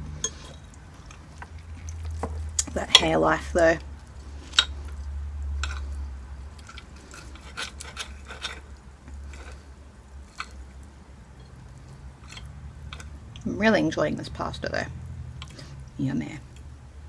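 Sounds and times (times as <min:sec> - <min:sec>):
low steady hum: 0:00.0 - 0:17.0
chewing mouth sounds: 0:00.3 - 0:02.8.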